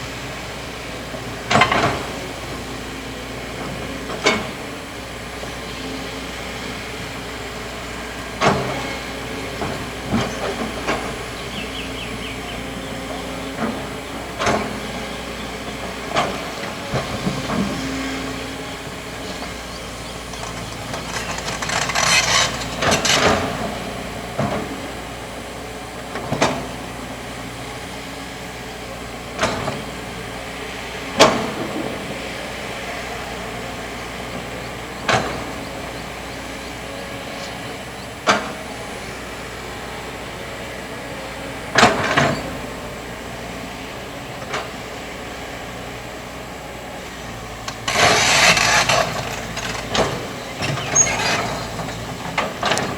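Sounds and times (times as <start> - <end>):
excavator running: 0.0 - 52.9
hissing rattling bursts: 47.7 - 52.3.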